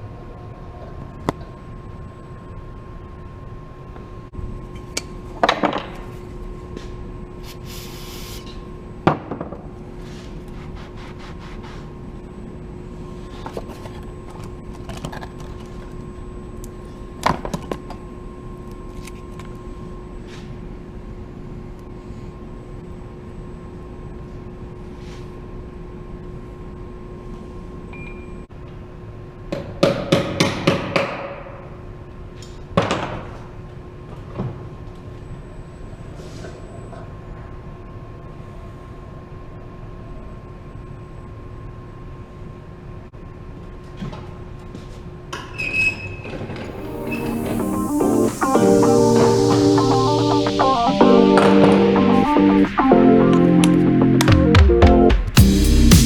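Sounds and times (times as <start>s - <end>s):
steady machine hum: 46.6s - 56.0s.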